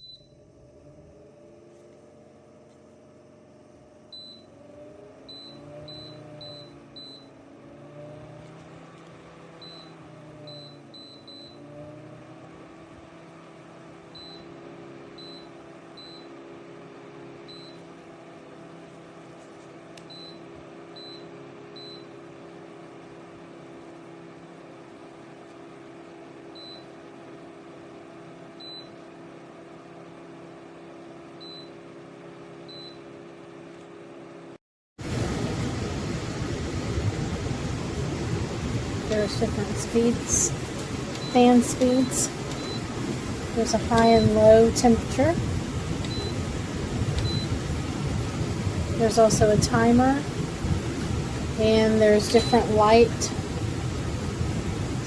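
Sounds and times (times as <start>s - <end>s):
air cooler fan humming: 0.0s - 14.4s, 35.0s - 55.0s.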